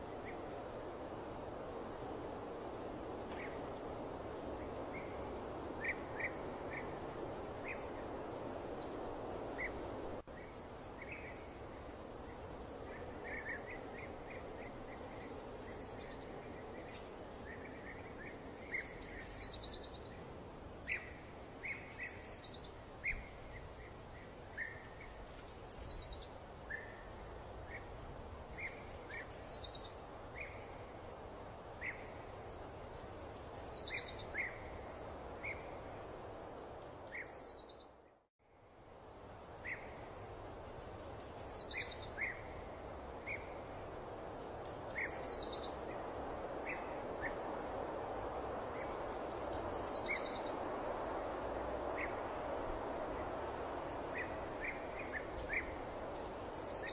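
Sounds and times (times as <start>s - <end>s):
steady background hiss: 0.0s - 56.9s.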